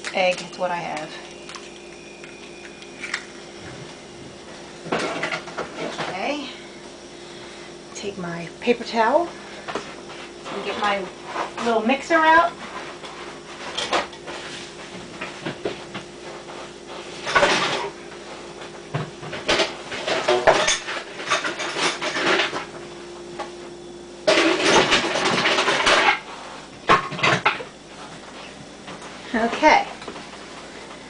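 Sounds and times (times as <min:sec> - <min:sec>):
faint steady hum: 0:00.0 - 0:31.0
utensils and dishes clattering: 0:17.2 - 0:17.9, 0:19.3 - 0:22.7, 0:24.3 - 0:26.3, 0:26.9 - 0:27.7.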